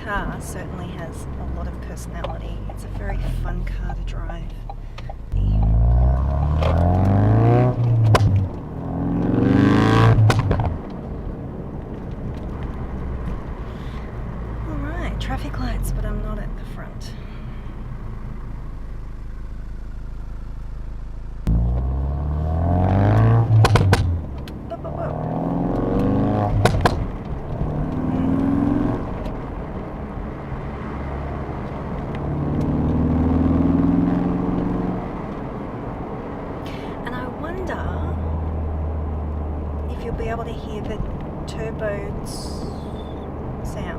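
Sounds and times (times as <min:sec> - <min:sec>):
exhaust pops: 0:00.0 - 0:14.3, 0:21.4 - 0:30.8
car engine accelerating: 0:00.0 - 0:43.9.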